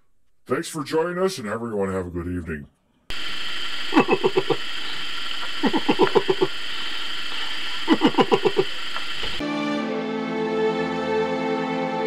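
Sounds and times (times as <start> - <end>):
electronic hum: 3.1 - 9.4
falling electronic chirps: 3.1 - 9.4.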